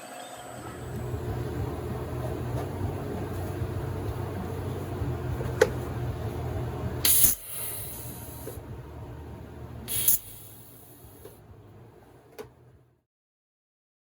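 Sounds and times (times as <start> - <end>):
steady low hum: 0.4 - 13.0
high hissing spray: 7.0 - 8.6, 9.9 - 11.1.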